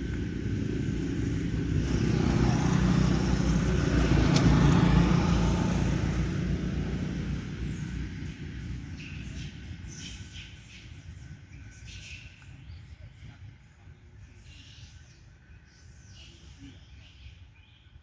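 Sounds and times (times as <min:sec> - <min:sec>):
vehicle engine and road rumble: 0:00.0 - 0:12.4.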